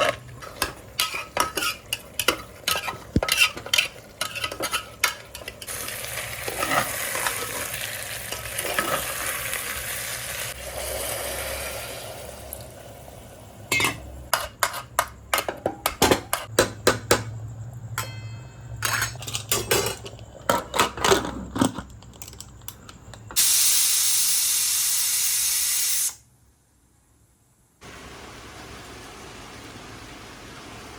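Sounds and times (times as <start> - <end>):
spoon clinking and scraping pot: 0.0 - 9.3, 13.7 - 16.5, 17.9 - 22.5
food sizzling in pot: 0.0 - 15.0, 23.4 - 26.2
loud steady hiss: 23.4 - 26.2.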